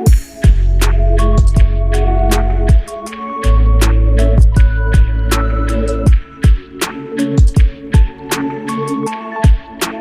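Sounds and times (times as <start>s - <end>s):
booming kick drums: 0.1s - 0.8s, 1.4s - 1.8s, 4.4s - 5.3s.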